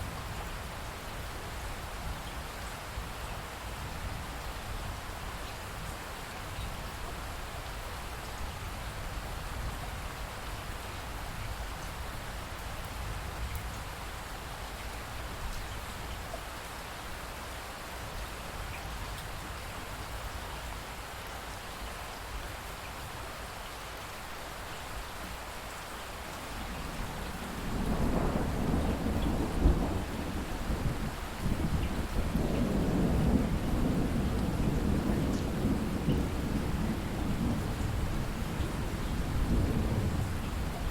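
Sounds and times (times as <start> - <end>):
rain falling: 0.0 - 40.9
thunder rumbling: 26.7 - 40.9.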